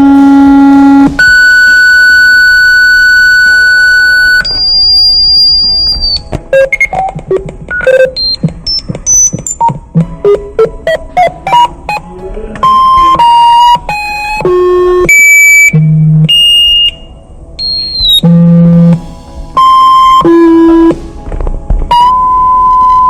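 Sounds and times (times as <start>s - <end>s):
fast electronic alarm notes: 0.0s - 6.9s, 12.6s - 21.0s
long held beeps: 0.0s - 7.0s, 12.6s - 21.0s, 21.9s - 23.0s.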